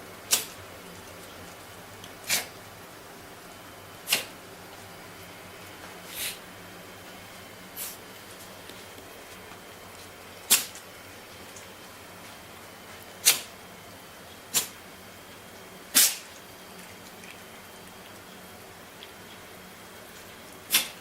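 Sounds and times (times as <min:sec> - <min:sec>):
dog sneezing: 0:02.2 - 0:02.5, 0:04.0 - 0:04.3, 0:06.1 - 0:06.4, 0:07.8 - 0:08.0, 0:10.5 - 0:10.8, 0:13.2 - 0:13.5, 0:14.5 - 0:14.8, 0:15.9 - 0:16.3, 0:20.7 - 0:21.0.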